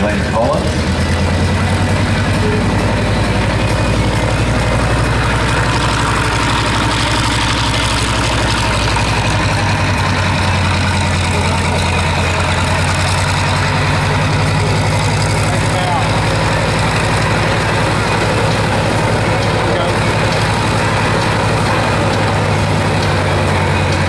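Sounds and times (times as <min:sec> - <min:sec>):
radial aircraft engine idling: 0:00.0 - 0:24.0.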